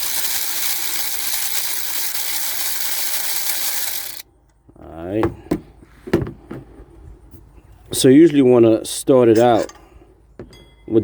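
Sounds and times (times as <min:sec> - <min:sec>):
electric ratchet running: 0:00.0 - 0:04.2.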